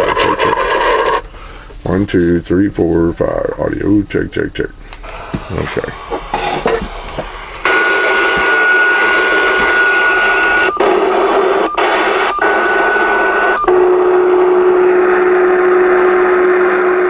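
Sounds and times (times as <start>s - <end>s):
radio static: 0.0s - 2.2s, 3.4s - 17.0s
steady high whistle: 7.3s - 17.0s.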